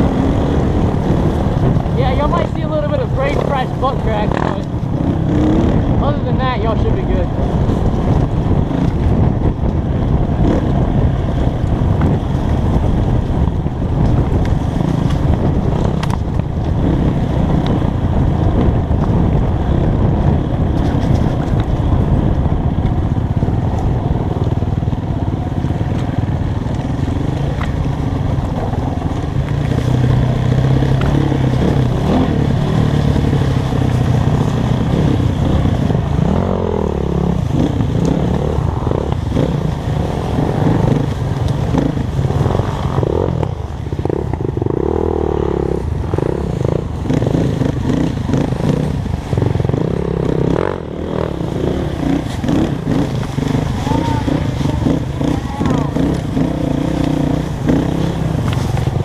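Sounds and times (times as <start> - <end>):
dirt bike engine revving: 0.0 - 9.3, 28.4 - 59.0.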